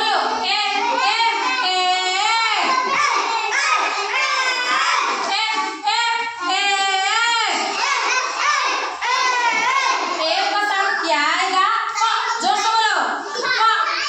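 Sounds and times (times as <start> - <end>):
children chanting in unison: 0.0 - 11.1.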